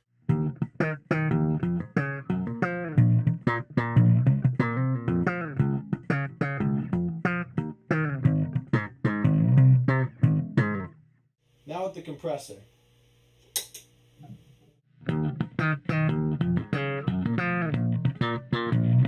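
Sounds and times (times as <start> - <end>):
electric bass plucked notes: 0.2 - 11.0, 15.0 - 19.0.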